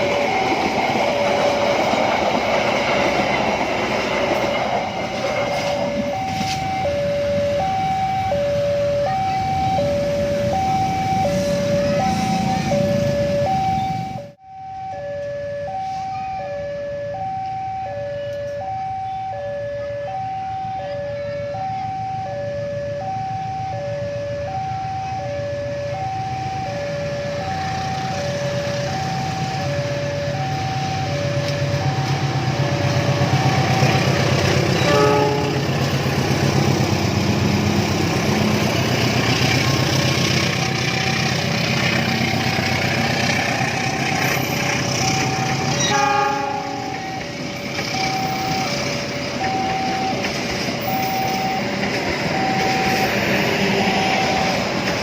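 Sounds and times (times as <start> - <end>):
diesel train rumble and clatter: 0.0 - 14.4, 22.9 - 55.0
level crossing alarm two tones: 4.4 - 33.8, 44.2 - 54.9.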